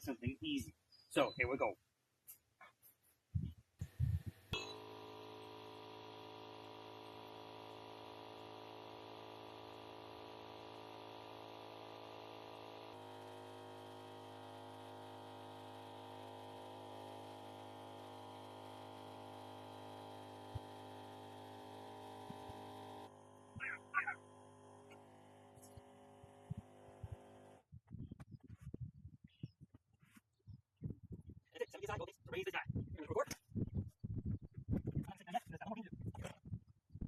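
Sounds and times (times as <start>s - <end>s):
electric air pump buzzing drone: 3.8s - 27.7s.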